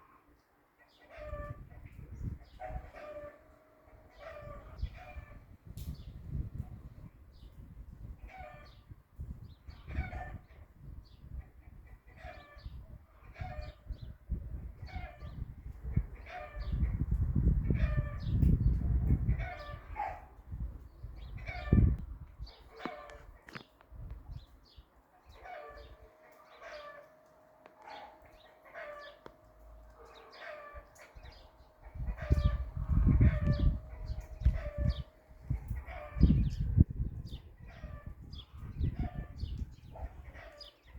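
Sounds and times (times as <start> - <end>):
chickens calling: 0.8 - 5.5, 11.3 - 14.1, 14.8 - 17.1, 19.2 - 23.8, 24.4 - 40.9
chickens clucking: 22.7 - 23.7, 25.3 - 36.7.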